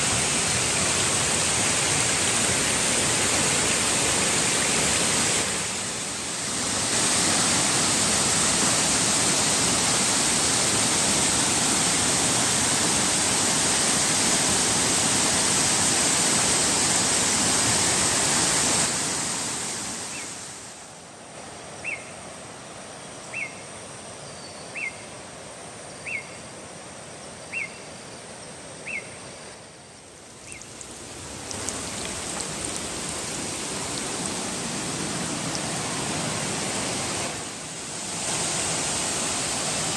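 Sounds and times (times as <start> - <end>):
waterfall rushing: 0.0 - 20.7, 30.2 - 39.9.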